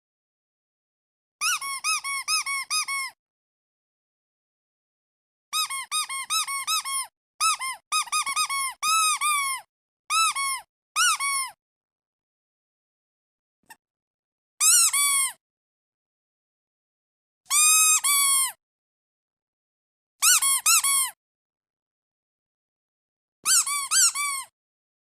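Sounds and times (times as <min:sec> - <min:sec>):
squeaky duck toy squeaking: 0:01.4 - 0:03.2, 0:05.5 - 0:11.6, 0:14.6 - 0:15.4, 0:17.5 - 0:18.6, 0:20.2 - 0:21.2, 0:23.4 - 0:24.5.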